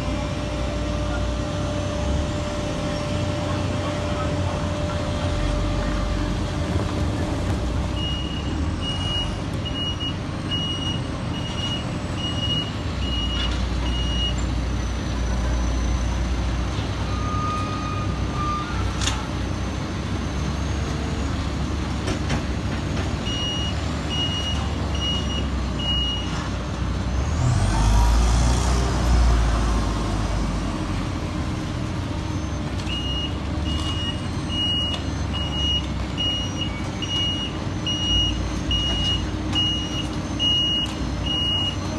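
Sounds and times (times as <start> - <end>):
diesel machinery engines running: 0.0 - 41.9
backup alarm beeping: 6.5 - 14.3.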